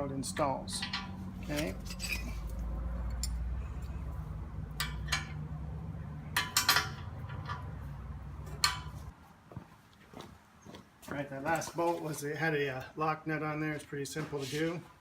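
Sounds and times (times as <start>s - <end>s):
wrench clinking on bolt: 0.7s - 3.4s, 4.7s - 5.4s, 6.3s - 7.8s, 8.5s - 9.1s.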